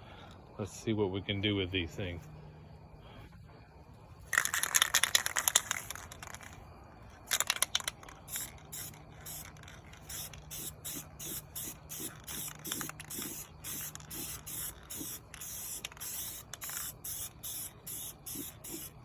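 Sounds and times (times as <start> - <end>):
spray can rattling: 4.3 - 6.6, 7.2 - 19.0
spray can hissing bursts: 8.2 - 19.0.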